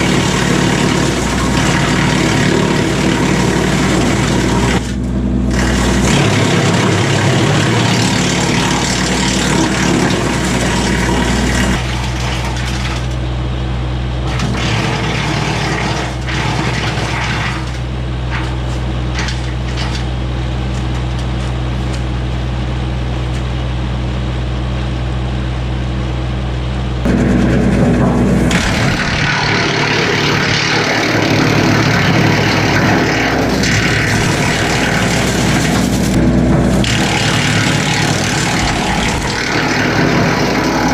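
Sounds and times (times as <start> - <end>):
tractor diesel engine running: 0.0 - 40.9.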